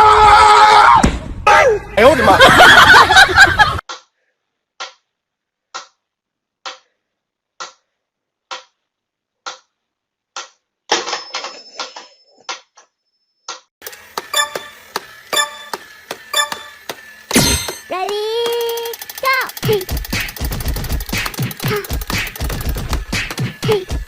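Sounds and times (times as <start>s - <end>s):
rapid clicking with ringing tones: 13.8s - 23.6s
clatter with high whine: 13.8s - 24.0s
sharp ticks: 17.9s - 23.6s.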